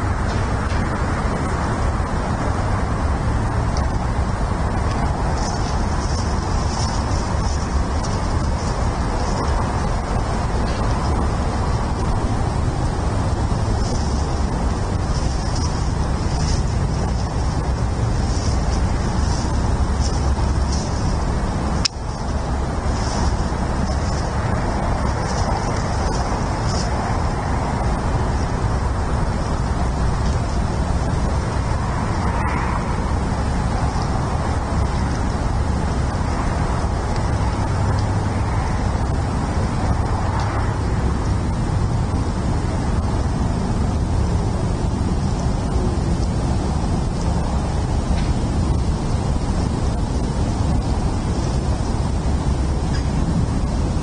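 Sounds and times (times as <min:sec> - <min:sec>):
low outdoor rumble: 0:00.0 - 0:54.0.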